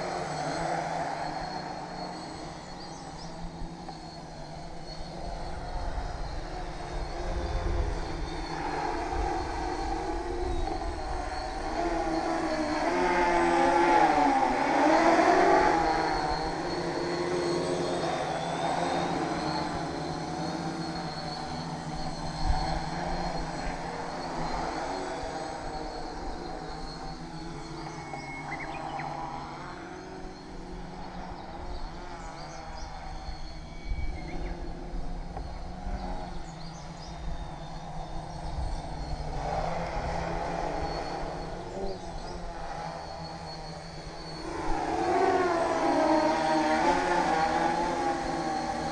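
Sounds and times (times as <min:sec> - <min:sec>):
drone propellers buzzing: 0:00.0 - 0:48.9.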